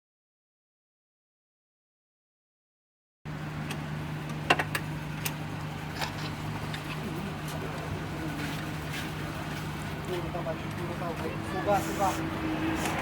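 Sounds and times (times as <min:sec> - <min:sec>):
sharp clicks and knocks: 0:03.6 - 0:05.4.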